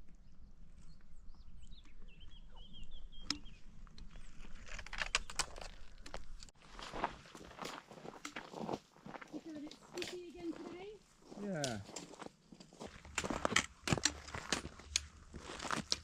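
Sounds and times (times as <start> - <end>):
small bird chirping: 0.2 - 4.3
footsteps crunching on trail: 4.1 - 16.0.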